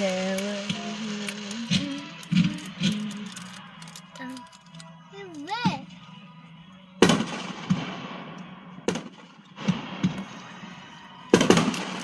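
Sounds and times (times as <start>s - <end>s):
fireworks crackle: 0.0s - 4.4s, 7.0s - 12.0s
fireworks bangs: 7.0s - 12.0s.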